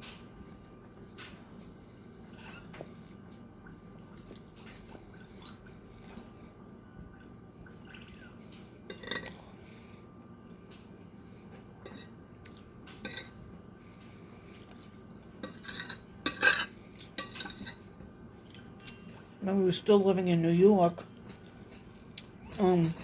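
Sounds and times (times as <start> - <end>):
dishes and cutlery clinking: 8.9 - 9.4, 11.8 - 13.4, 15.4 - 17.9.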